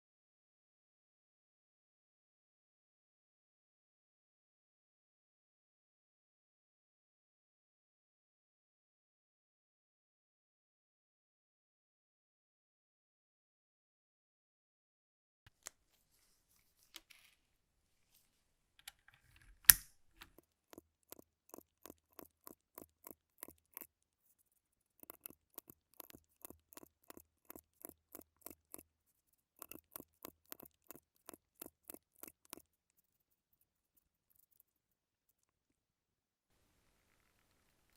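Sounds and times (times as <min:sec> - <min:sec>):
mechanical keyboard clicks: 0:18.8 - 0:20.4.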